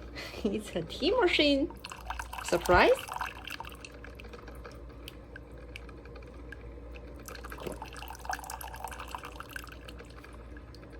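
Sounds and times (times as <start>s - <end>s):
coffee maker humming: 0.0s - 10.9s
coffee dripping: 1.4s - 10.9s.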